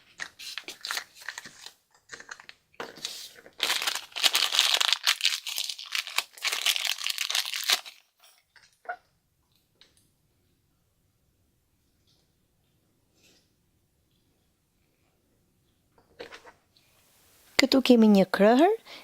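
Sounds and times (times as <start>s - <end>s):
crinkly wrapper crackling: 0.0s - 8.1s.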